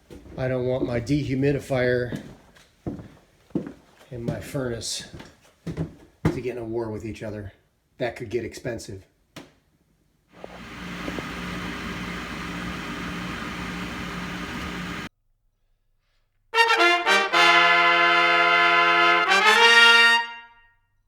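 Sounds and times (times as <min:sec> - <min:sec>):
machine hum with hiss: 0:10.4 - 0:15.1
brass fanfare: 0:16.6 - 0:20.7.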